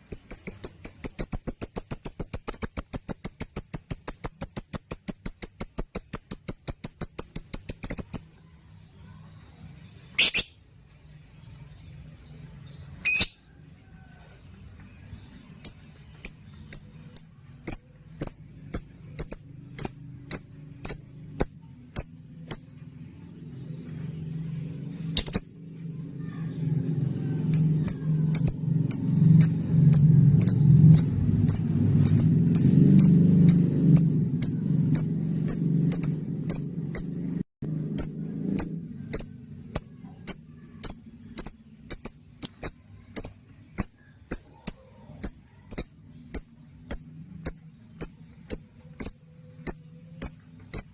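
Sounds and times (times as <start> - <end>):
bird chirping high-pitched: 0.0 - 13.5, 15.0 - 50.9
low hum: 5.1 - 50.9.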